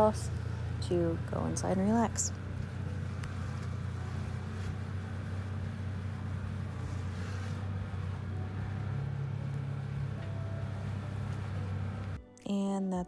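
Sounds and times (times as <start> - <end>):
vehicle engine humming: 0.0 - 12.2.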